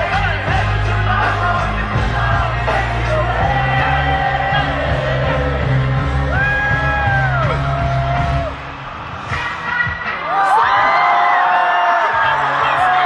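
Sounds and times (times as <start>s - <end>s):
bass line: 0.0s - 10.4s
sung and shouted vocals: 0.0s - 13.0s.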